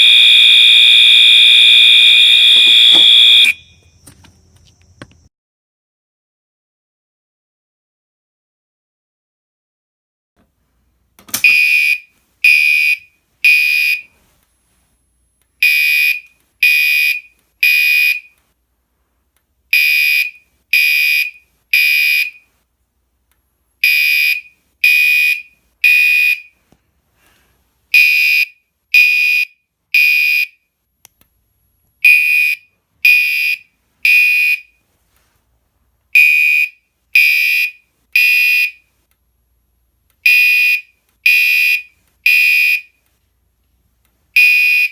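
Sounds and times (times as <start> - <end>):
fire alarm high-pitched beeps: 0.0 - 4.1, 11.4 - 14.1.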